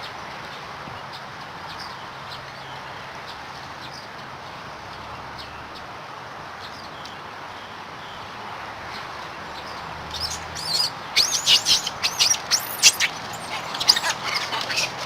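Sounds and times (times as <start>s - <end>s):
steady outdoor hiss: 0.0s - 15.0s
small birds chirping: 6.6s - 15.0s.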